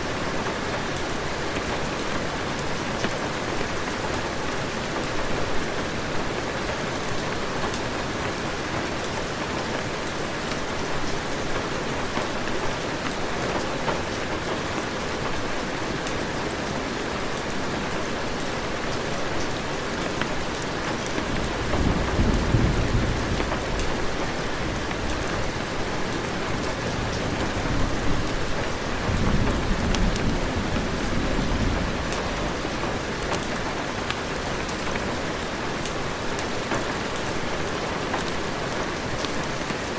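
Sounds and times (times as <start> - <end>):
heavy rain: 0.0 - 39.9
low rolls of thunder: 21.3 - 34.0.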